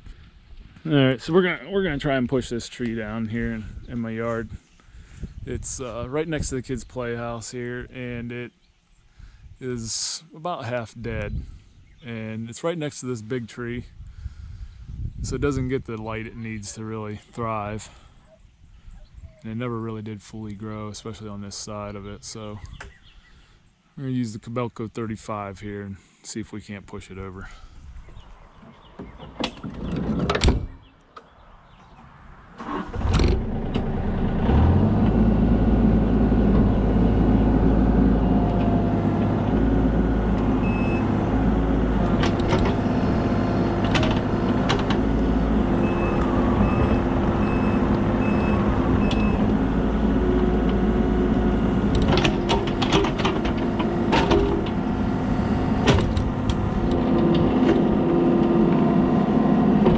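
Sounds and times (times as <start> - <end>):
excavator diesel engine running: 32.6 - 59.9
sharp knocks from machine working: 52.0 - 54.8.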